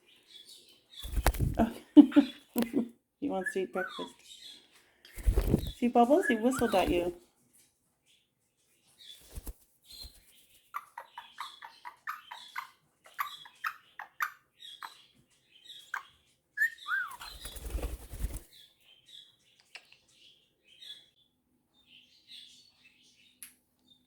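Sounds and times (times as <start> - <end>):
parrots chirping and chattering: 0.1 - 7.2, 9.9 - 21.1
wing flapping: 1.0 - 1.8, 5.2 - 7.2, 9.2 - 10.5, 17.2 - 18.5.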